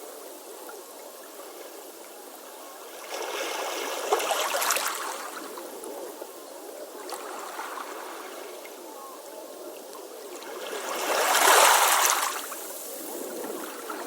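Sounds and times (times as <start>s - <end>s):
waves washing on shore: 1.4s - 6.1s, 10.0s - 14.0s.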